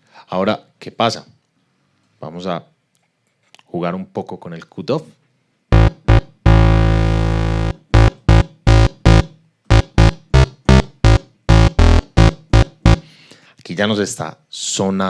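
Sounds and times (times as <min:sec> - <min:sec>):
synthesizer bass notes: 0:05.7 - 0:13.0.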